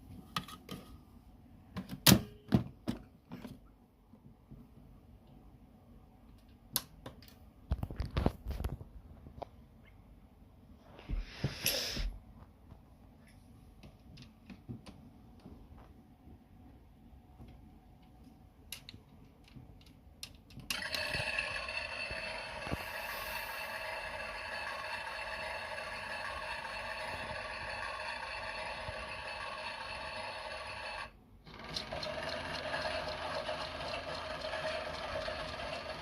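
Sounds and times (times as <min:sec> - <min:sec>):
toy washing machine motor whirring: 0:20.7 - 0:36.0.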